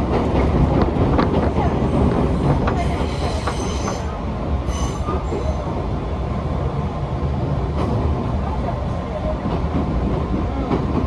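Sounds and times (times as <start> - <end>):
train rumbling: 0.0 - 11.0
high-pitched wheel squeals: 1.4 - 6.0.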